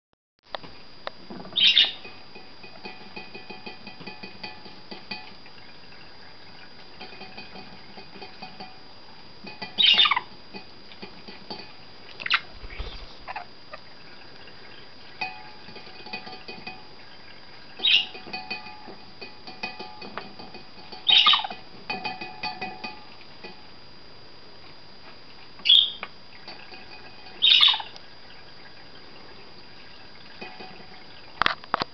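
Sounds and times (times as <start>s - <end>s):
budgerigar harsh squawks: 1.6s - 2.0s, 27.4s - 27.9s.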